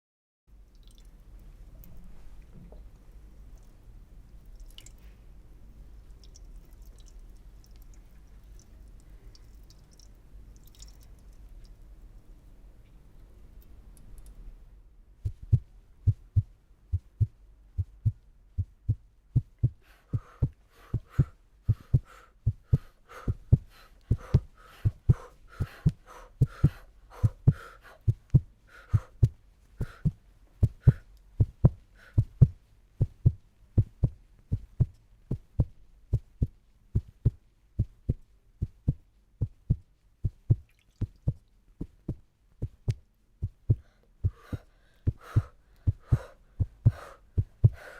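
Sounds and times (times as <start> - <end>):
heartbeat thumps: 15.2 - 47.9.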